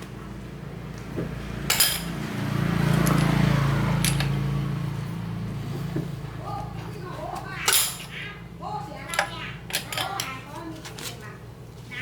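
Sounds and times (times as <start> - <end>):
mechanical hum: 0.0 - 12.0
metal clinking: 1.7 - 2.2, 2.9 - 3.4, 4.0 - 4.4.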